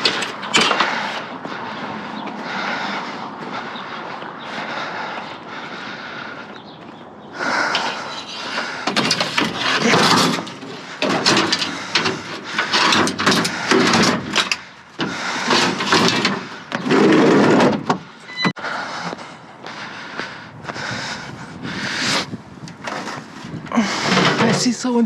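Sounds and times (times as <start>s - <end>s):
junk clattering and scraping: 0.0s - 2.6s, 7.4s - 18.6s, 22.7s - 25.0s.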